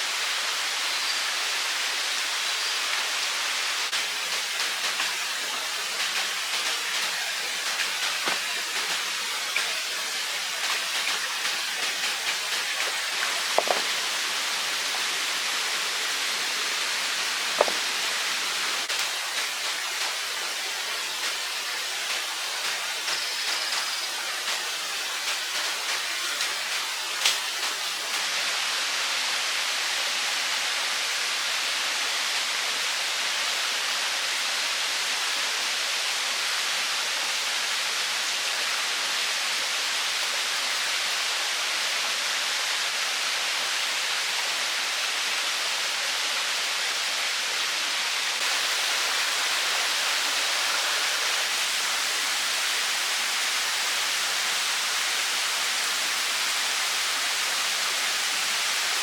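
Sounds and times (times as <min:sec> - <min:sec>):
running water rushing: 0:00.0 - 0:29.0, 0:42.2 - 0:59.0.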